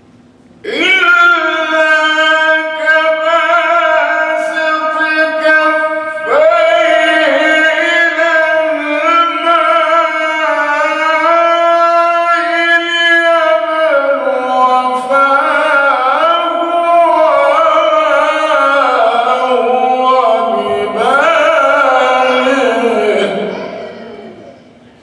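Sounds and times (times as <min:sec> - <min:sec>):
man chanting melodically: 0:00.6 - 0:24.8.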